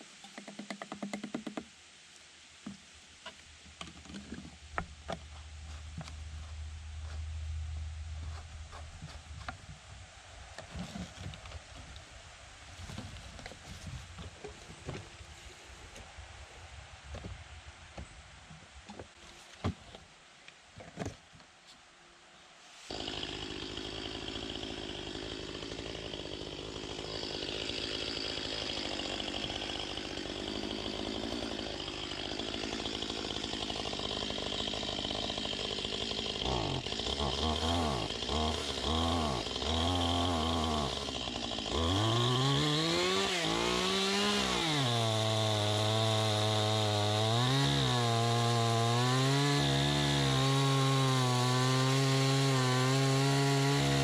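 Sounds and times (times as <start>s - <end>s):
chainsaw running and revving: 22.9s - 54.0s.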